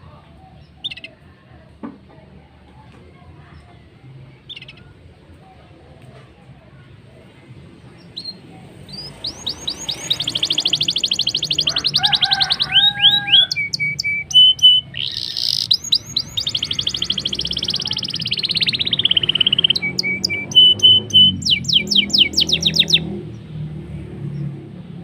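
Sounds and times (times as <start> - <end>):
bird singing with trills: 8.0 - 23.2.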